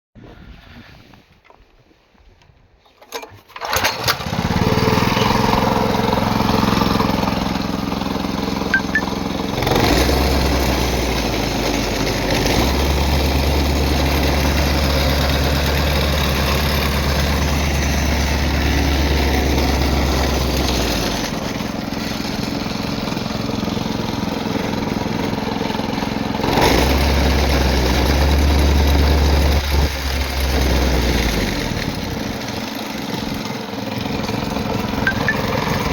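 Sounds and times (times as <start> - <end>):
pull-starting engine: 2.8 - 35.9
small engine idling and revving: 3.5 - 35.9.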